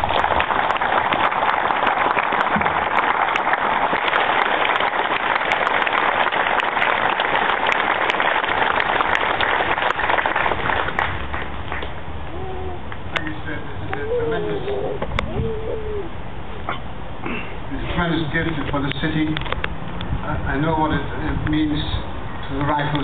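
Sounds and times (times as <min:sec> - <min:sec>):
crowd applauding: 0:00.0 - 0:12.8.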